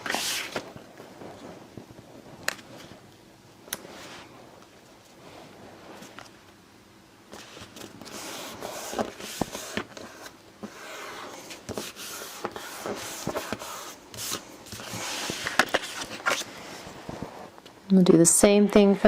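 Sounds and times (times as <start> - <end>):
paper rustling and sliding: 0.0 - 1.6, 7.3 - 17.6.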